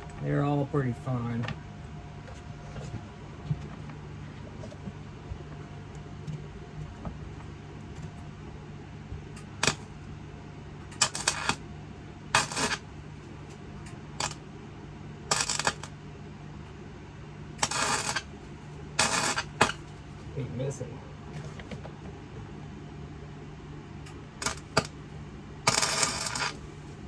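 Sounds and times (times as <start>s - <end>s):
electrical hum: 0.0s - 27.0s
welding arc bursts: 9.6s - 9.9s, 10.9s - 11.6s, 12.4s - 12.9s, 14.2s - 14.4s, 15.3s - 15.9s, 17.6s - 18.3s, 19.0s - 19.8s, 24.4s - 24.9s, 25.7s - 26.6s.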